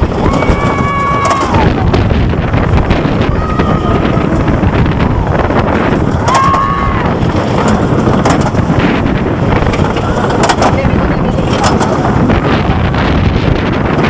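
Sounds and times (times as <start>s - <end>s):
riders screaming: 0.0s - 2.1s, 2.8s - 8.0s
wind rushing over microphone: 0.0s - 14.0s.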